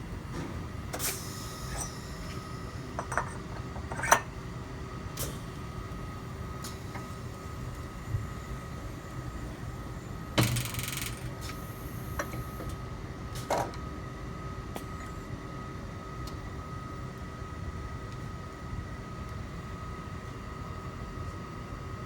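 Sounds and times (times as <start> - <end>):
machinery hum and whine: 0.0 - 22.0
sharp machine clunk: 10.4 - 11.4.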